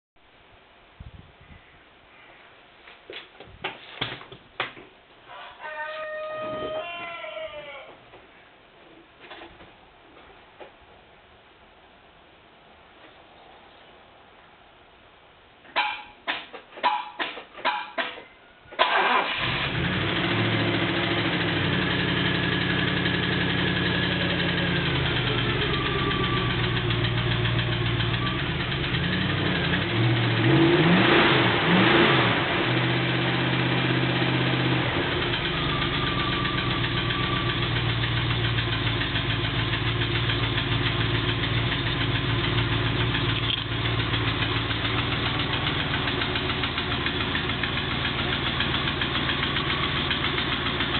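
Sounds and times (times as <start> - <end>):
car engine starting and idling: 18.8 - 50.9
engine knock: 20.4 - 30.4, 35.1 - 50.9.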